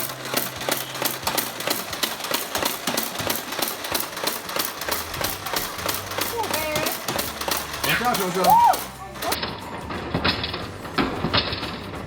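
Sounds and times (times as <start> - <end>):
toy blaster firing darts rapidly: 0.0 - 9.4.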